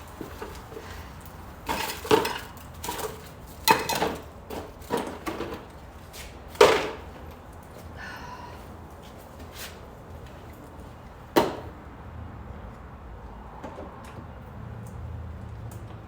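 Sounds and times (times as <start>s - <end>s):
tools and parts clinking: 0.0s - 7.9s.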